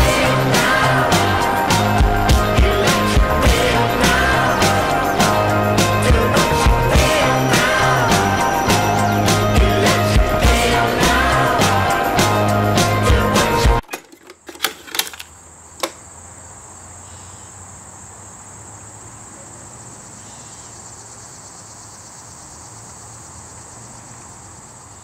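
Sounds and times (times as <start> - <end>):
music: 0.0 - 13.8
crickets chirping: 0.4 - 25.0
sharp clicks: 13.8 - 16.0.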